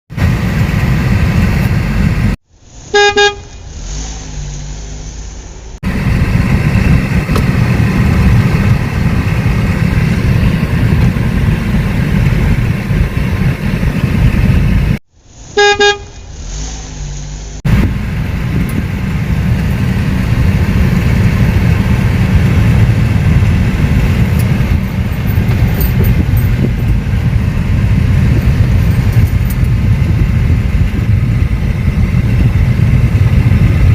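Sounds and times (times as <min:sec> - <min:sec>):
low vehicle rumble: 0:00.1 - 0:33.9
car horn honk: 0:02.9 - 0:03.7, 0:15.6 - 0:16.3.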